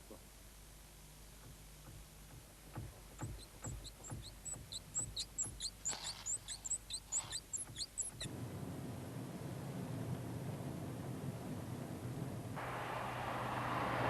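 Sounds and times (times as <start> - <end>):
high-pitched squeaks: 3.2 - 8.3.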